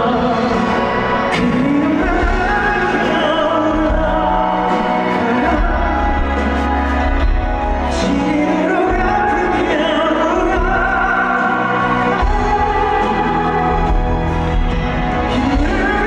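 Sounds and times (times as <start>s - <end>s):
band accompaniment: 0.0s - 16.0s
deep bass: 0.0s - 16.0s
man singing: 0.0s - 16.0s.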